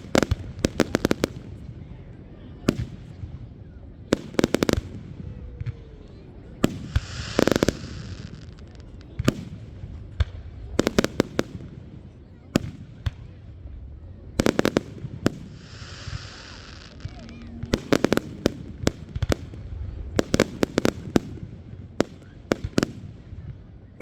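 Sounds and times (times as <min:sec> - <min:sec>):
fireworks bursting in bangs: 0:00.0 - 0:01.7, 0:04.1 - 0:05.9, 0:06.6 - 0:13.6, 0:14.3 - 0:24.0
fireworks hiss: 0:06.7 - 0:09.0, 0:14.5 - 0:19.4.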